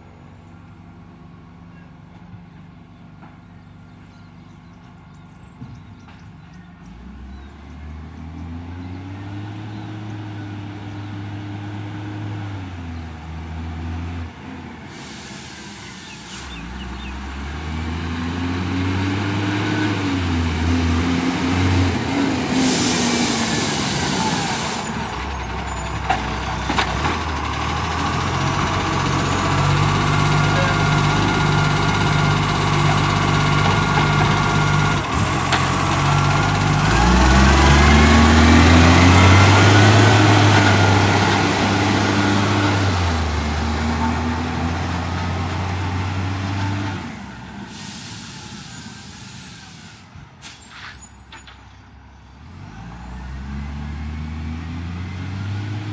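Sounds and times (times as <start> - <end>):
garbage truck diesel engine: 0.0 - 55.9
air hisses: 14.9 - 16.7, 22.5 - 25.1, 47.7 - 50.7.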